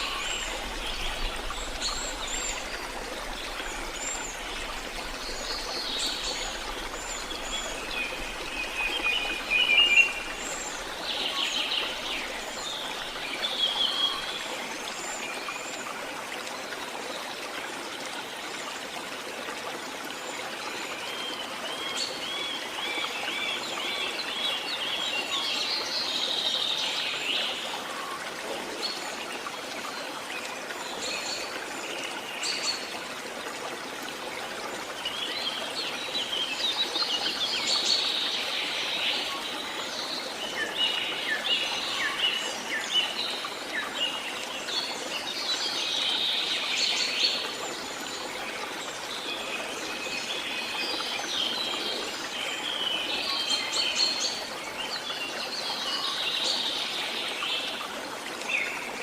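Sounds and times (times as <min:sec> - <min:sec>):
songbirds chirping and trilling: 0:00.0 - 0:15.7.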